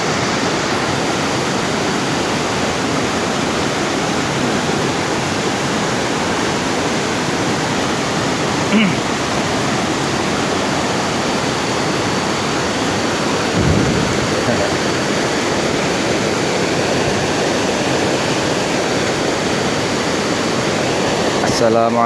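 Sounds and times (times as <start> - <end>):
river water rushing: 0.0 - 22.0
low thump: 13.6 - 15.5.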